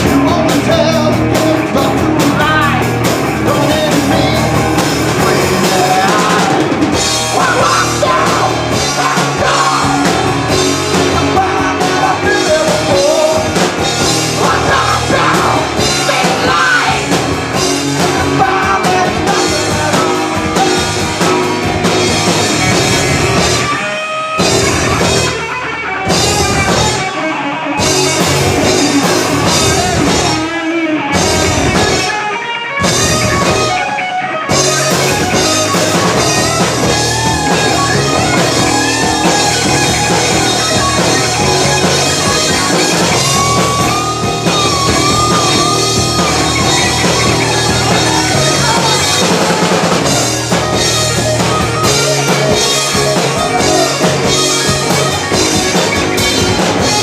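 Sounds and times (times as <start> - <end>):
person singing: 0.0 - 21.5, 35.3 - 50.8, 51.9 - 55.4
live rock band: 0.0 - 57.0.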